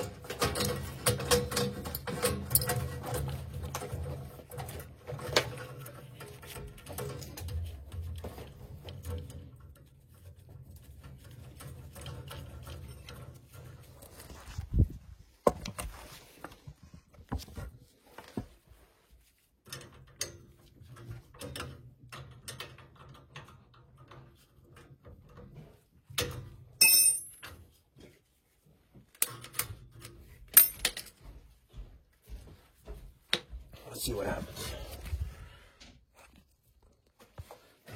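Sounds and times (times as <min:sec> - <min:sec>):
tools clicking and clinking: 0:00.0 - 0:07.8, 0:26.2 - 0:27.6, 0:29.1 - 0:31.3
ringing metallic clink: 0:26.8 - 0:27.4.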